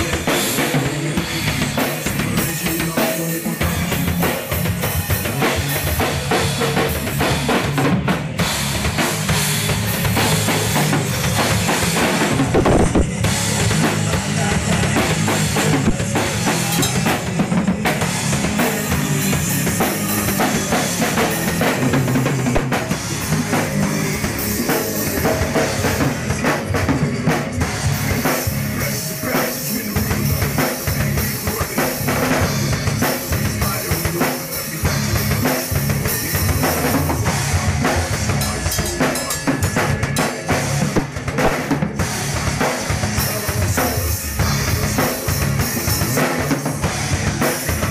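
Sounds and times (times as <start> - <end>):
drum kit groove: 0.0 - 47.9.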